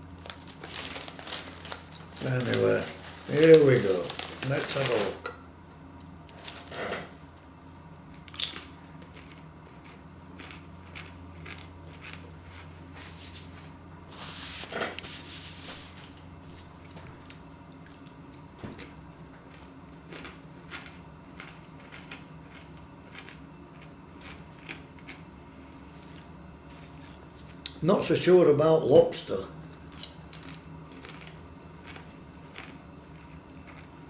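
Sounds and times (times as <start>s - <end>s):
crisps being crunched and chewed: 0.0s - 5.2s, 8.1s - 12.8s, 18.8s - 25.3s, 29.6s - 34.0s.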